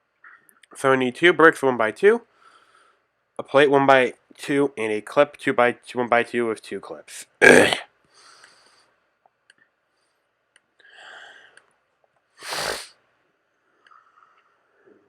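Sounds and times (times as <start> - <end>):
person sneezing: 7.4 - 7.8, 12.4 - 13.0.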